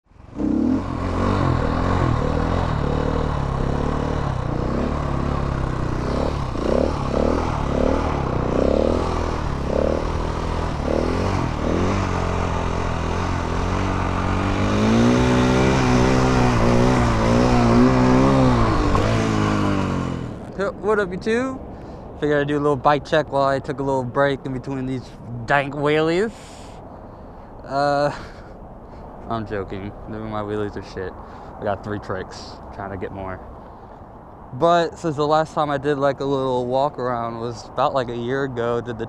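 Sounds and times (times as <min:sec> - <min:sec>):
motorcycle engine idling: 0:00.3 - 0:20.4.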